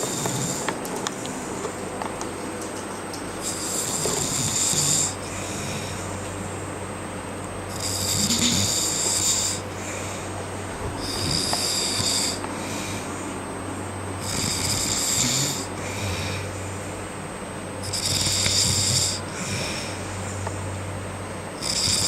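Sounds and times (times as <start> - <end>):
man snoring: 0.0 - 0.8, 3.4 - 6.2, 7.7 - 10.3, 11.0 - 13.1, 14.2 - 16.7, 17.8 - 20.1, 21.6 - 22.0.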